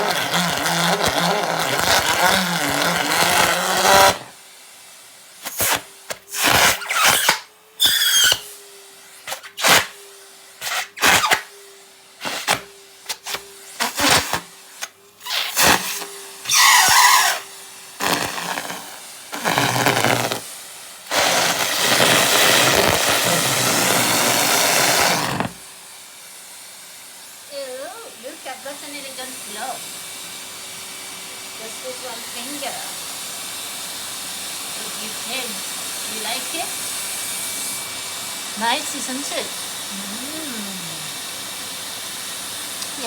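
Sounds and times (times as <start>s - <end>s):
rubber rasping in vacuum hose: 0.0s - 4.3s, 5.4s - 8.5s, 9.3s - 9.9s, 10.6s - 11.5s, 12.2s - 20.5s, 21.1s - 25.6s
vacuum cleaner motor humming: 0.0s - 43.0s.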